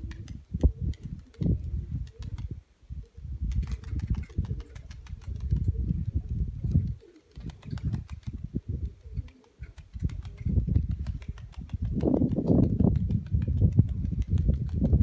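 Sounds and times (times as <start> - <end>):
pigeon cooing: 3.8 - 5.0, 6.8 - 7.9, 8.9 - 10.6.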